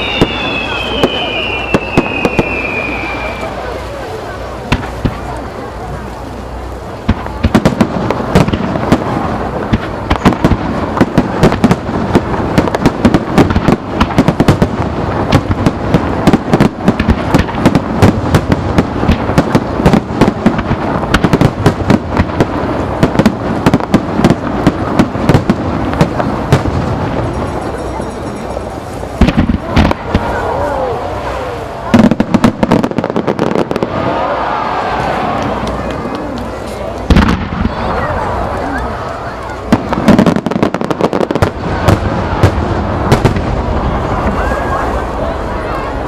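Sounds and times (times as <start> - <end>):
fireworks crackling: 0.0 - 46.0
fireworks sharp bangs: 0.0 - 46.0.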